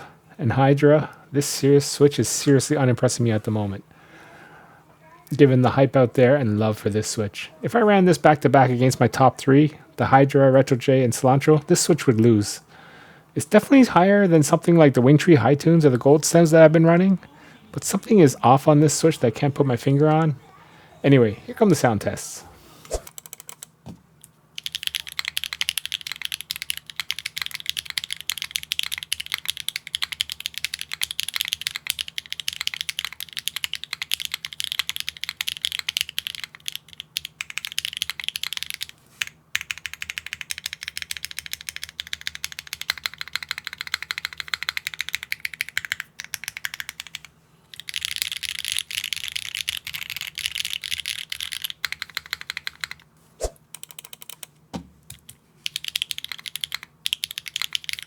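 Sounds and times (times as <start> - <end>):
mechanical keyboard typing: 23.1 - 23.7, 24.6 - 53.0, 53.8 - 54.5, 55.1 - 58.0.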